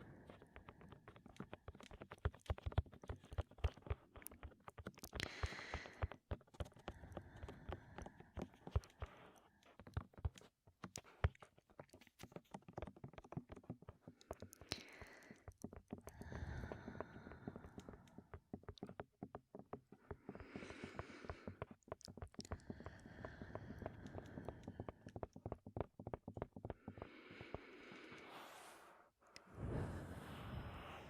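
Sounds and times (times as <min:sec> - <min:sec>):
breath rushing into microphone: 0:27.0 - 0:31.0.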